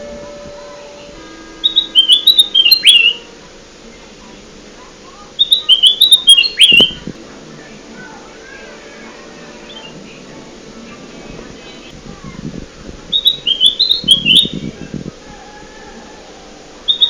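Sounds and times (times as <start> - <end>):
bulbul whistled song: 1.0 - 3.3, 5.4 - 7.1, 13.1 - 14.9.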